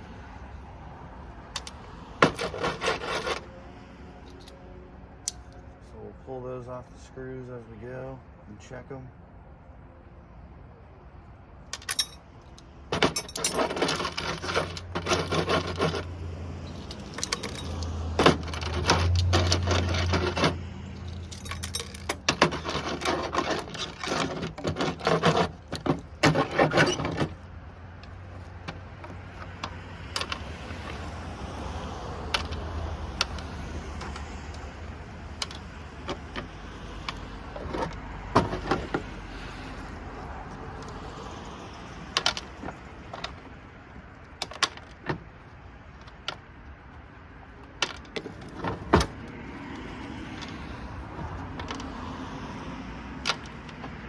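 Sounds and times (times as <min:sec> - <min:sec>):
small metal parts clinking: 0:01.5 - 0:03.4, 0:11.7 - 0:27.4, 0:28.0 - 0:31.1, 0:32.2 - 0:39.0.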